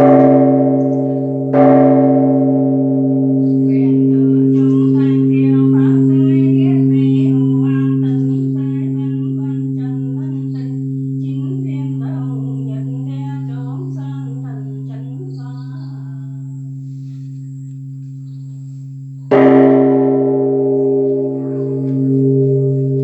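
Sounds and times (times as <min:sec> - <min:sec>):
large bell deep hum: 0:00.0 - 0:23.0
voice chanting: 0:03.5 - 0:16.6.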